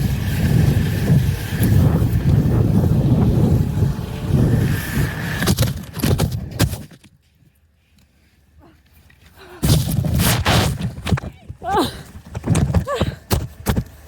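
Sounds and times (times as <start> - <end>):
wind buffeting microphone: 0.0 - 5.5
snowmobile engine rumble: 0.0 - 6.7.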